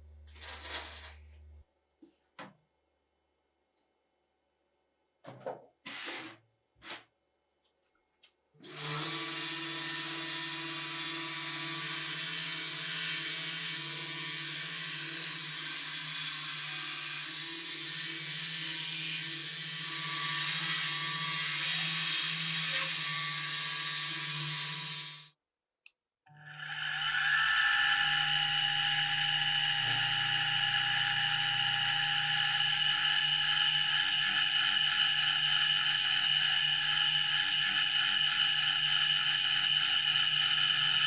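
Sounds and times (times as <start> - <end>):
small electric power tool running: 8.6 - 25.3, 26.3 - 41.0.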